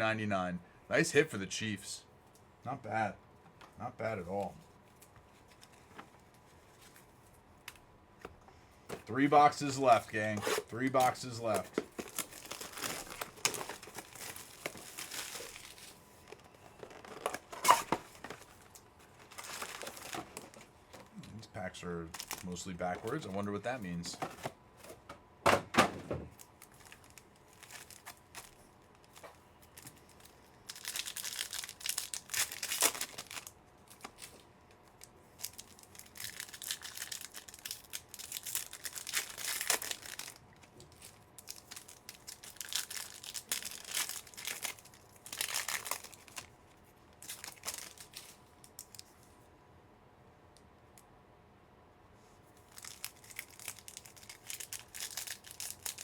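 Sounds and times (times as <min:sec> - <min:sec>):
card pack wrappers tearing: 0:09.1 - 0:20.7, 0:22.1 - 0:24.5, 0:26.4 - 0:46.5, 0:47.2 - 0:49.1, 0:52.7 - 0:56.0.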